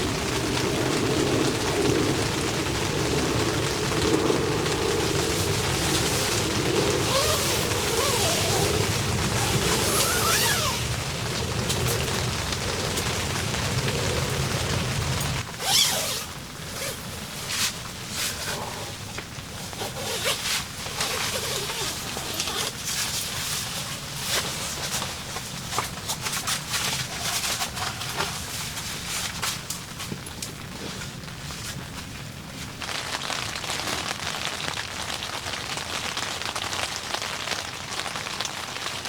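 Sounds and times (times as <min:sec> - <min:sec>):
deep rumble: 0:00.0 - 0:15.6
heavy rain falling: 0:00.0 - 0:39.0.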